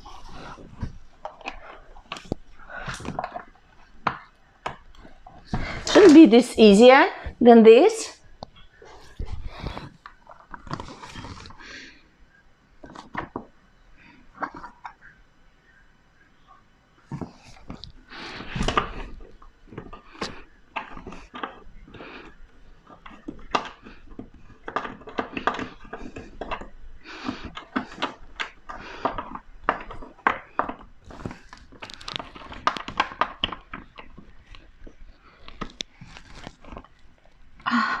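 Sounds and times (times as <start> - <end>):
hands knocking and scraping plastic: 0.0 - 6.2, 17.1 - 37.6.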